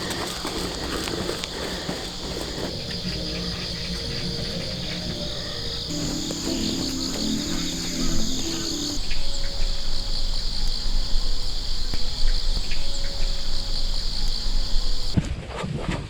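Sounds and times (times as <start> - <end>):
insects chirring: 0.0 - 15.2
faint clicks: 9.4 - 15.2.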